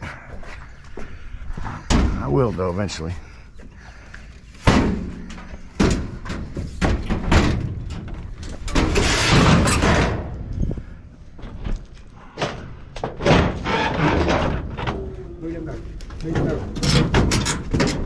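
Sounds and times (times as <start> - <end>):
scrap metal banging: 4.6 - 10.4
metal scraping: 6.5 - 10.6, 13.2 - 15.1.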